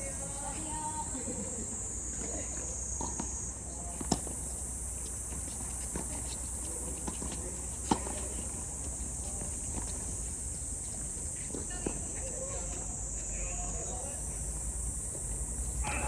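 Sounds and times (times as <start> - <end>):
high-pitched insect chorus: 0.0 - 16.0
tennis ball striking racket: 4.0 - 10.2.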